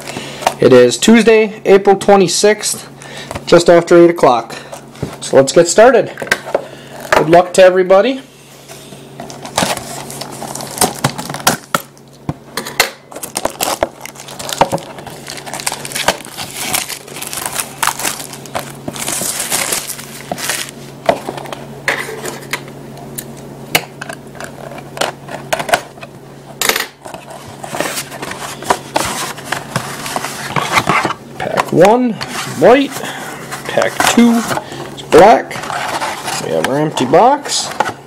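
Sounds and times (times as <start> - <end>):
plastic wrap tearing and crinkling: 9.3 - 12.1, 13.1 - 20.8.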